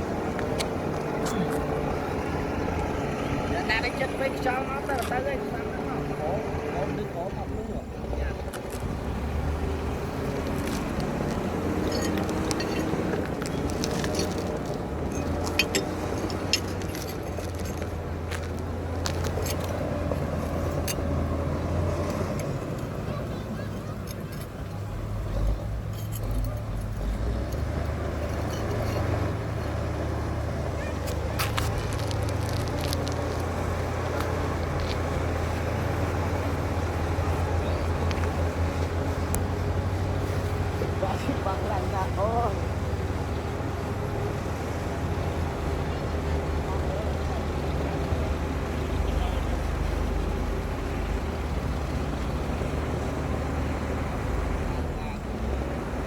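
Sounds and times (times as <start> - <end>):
bulldozer engine running: 0.0 - 56.0
metallic clinks and clanks: 10.3 - 21.4, 22.0 - 29.9.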